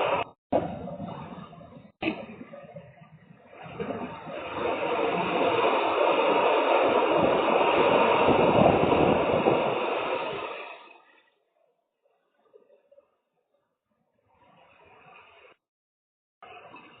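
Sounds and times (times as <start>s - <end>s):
thunder rumbling: 0.0s - 10.7s.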